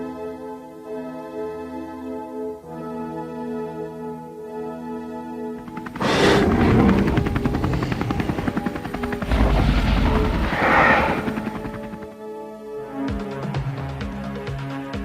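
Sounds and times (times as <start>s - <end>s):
deep rumble: 5.6s - 12.1s
rushing swell: 5.6s - 12.1s
film score music: 5.6s - 12.2s.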